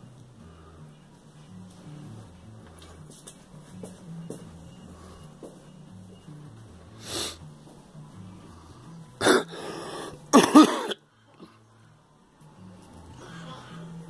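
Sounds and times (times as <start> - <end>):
girl coughing: 9.2 - 9.6, 10.3 - 11.0.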